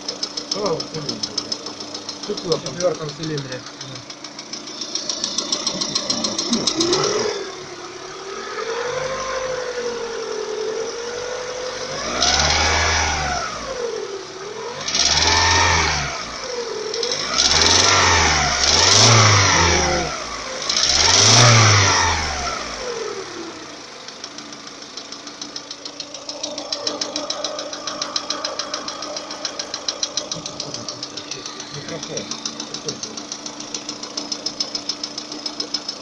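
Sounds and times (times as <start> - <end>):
fast metallic engine knock: 0.0 - 7.3, 24.1 - 36.0
car engine revving: 0.0 - 36.0.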